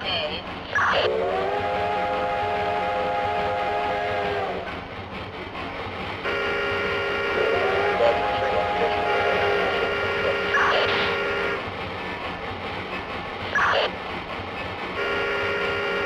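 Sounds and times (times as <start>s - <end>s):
train running rumble: 0.0s - 16.0s
train whistle blasts: 0.8s - 4.8s, 6.3s - 11.6s, 14.9s - 16.0s.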